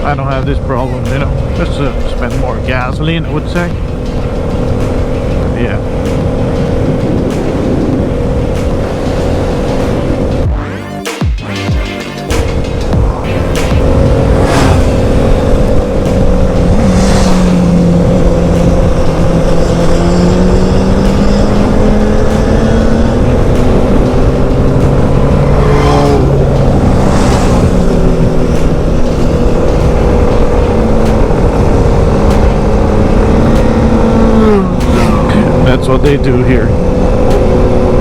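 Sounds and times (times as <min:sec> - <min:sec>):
vehicle engine running: 0:00.0 - 0:10.6, 0:12.2 - 0:38.0
short whooshes: 0:12.3 - 0:17.9
wind rumble on microphone: 0:12.4 - 0:38.0.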